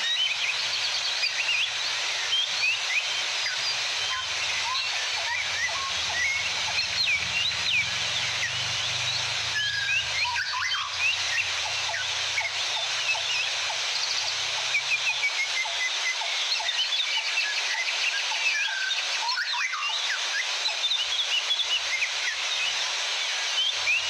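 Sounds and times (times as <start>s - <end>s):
waterfall rushing: 0.0s - 16.6s
small birds chirping: 0.0s - 24.0s.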